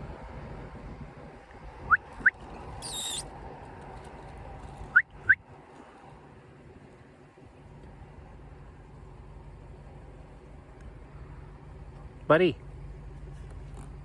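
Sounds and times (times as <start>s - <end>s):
lip kissing squeaks: 2.2s - 3.2s
brief hiss: 2.8s - 3.2s
low steady rumble: 6.0s - 14.0s.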